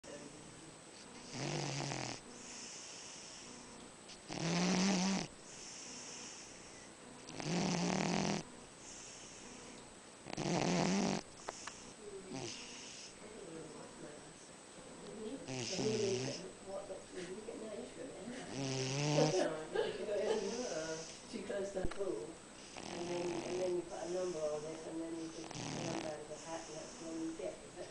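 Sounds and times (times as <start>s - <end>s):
cat snoring: 1.2s - 3.7s, 4.3s - 13.2s, 15.4s - 16.4s, 18.5s - 19.4s, 22.6s - 27.4s.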